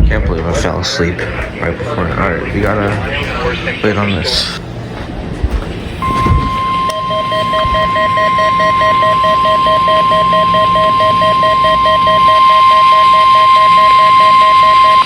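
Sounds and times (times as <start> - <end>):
long steady alarm tone: 6.0 - 15.0
lower tone beeping: 6.0 - 15.0.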